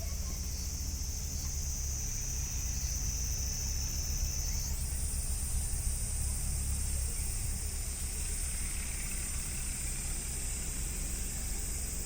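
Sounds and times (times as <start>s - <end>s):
tractor diesel engine droning: 0.0s - 12.0s.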